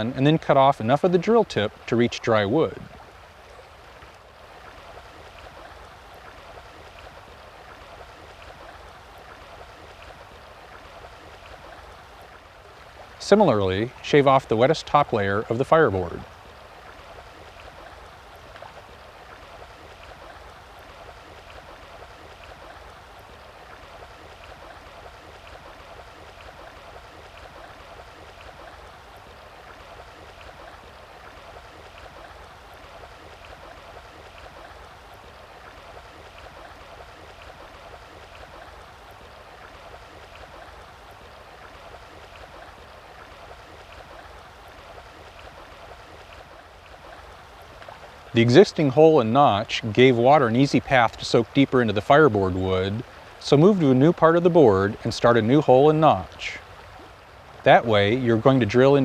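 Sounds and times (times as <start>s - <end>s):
stream water rushing: 0.0s - 59.0s.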